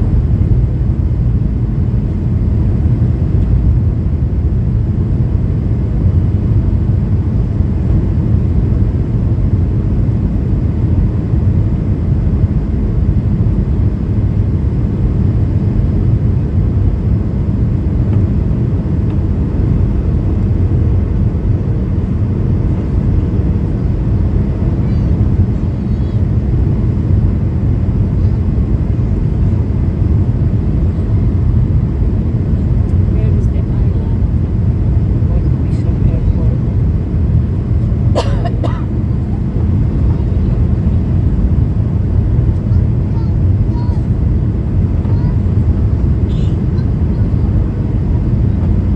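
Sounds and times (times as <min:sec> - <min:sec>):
airflow over fuselage: 0:00.0 - 0:48.9
airplane cabin engine rumble: 0:00.0 - 0:48.9.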